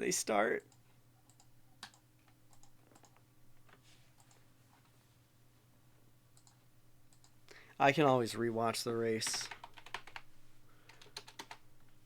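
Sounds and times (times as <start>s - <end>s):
low steady hum: 0.0s - 12.0s
keyboard typing clicks: 0.6s - 3.2s, 6.4s - 7.4s, 9.2s - 10.3s, 10.9s - 11.6s.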